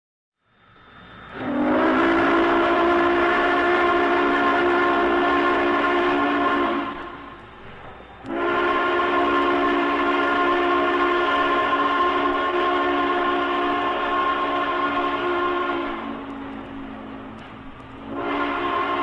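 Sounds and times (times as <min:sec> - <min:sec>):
steam whistle blowing: 0:00.8 - 0:17.2, 0:18.0 - 0:19.0.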